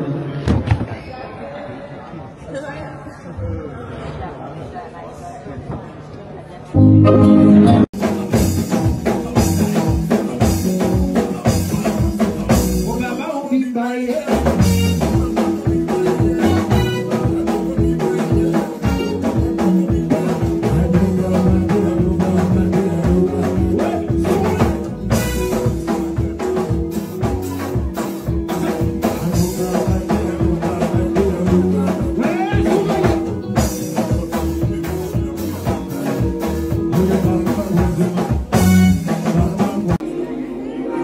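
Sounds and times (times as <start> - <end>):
loud music with drums and bass: 7.5 - 13.3, 14.1 - 40.0
faint singing: 8.0 - 41.0.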